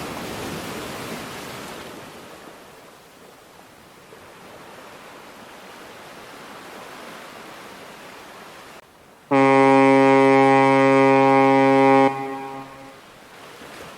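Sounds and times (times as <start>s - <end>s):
waves washing on shore: 0.0s - 13.9s
loud horn blast: 9.3s - 13.0s.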